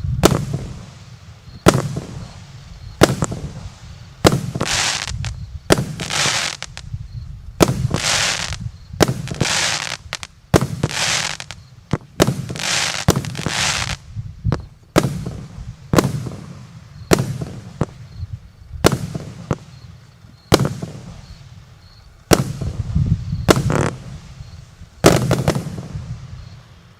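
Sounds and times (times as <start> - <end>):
firework shots: 0.0 - 7.0, 7.6 - 26.8
crackling hiss of bursts: 0.0 - 26.9.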